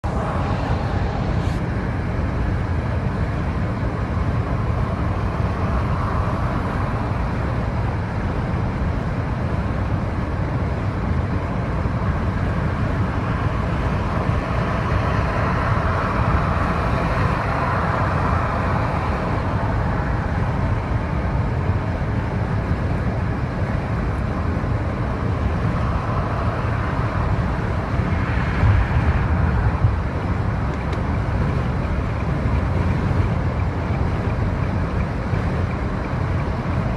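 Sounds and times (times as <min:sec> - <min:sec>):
road and engine rumble in car: 0:00.0 - 0:36.9
tyre and wind noise: 0:00.0 - 0:36.9.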